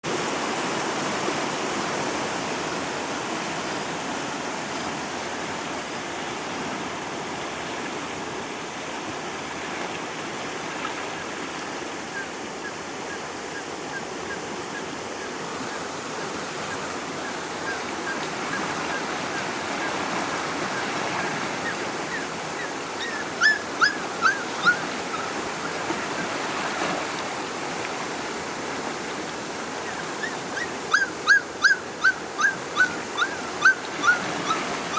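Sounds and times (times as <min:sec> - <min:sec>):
rushing floodwater: 0:00.0 - 0:34.9
puppies whimpering and yelping: 0:21.6 - 0:25.8, 0:29.9 - 0:34.9.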